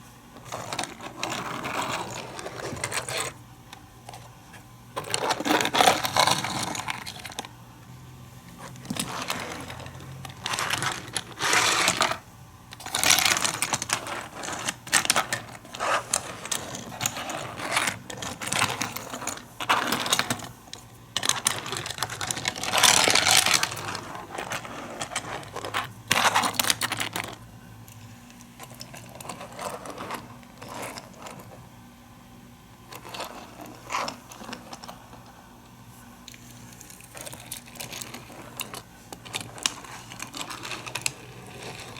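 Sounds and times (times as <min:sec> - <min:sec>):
toy cars clattering on plastic track: 0:00.4 - 0:03.4, 0:05.0 - 0:07.5, 0:08.6 - 0:12.2, 0:12.8 - 0:27.4, 0:37.1 - 0:41.9.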